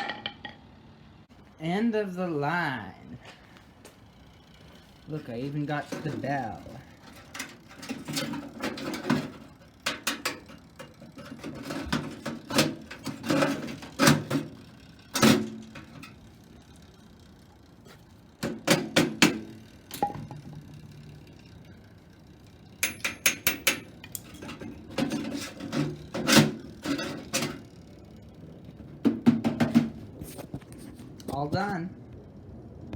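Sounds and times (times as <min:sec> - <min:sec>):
loose parts knocking and clicking: 0:05.7 - 0:16.2, 0:18.4 - 0:20.8, 0:22.8 - 0:27.7, 0:29.0 - 0:30.0.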